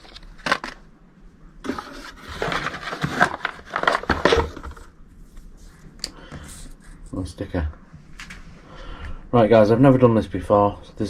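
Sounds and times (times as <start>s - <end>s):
plastic packet rustling: 0.0s - 0.9s, 1.6s - 5.0s.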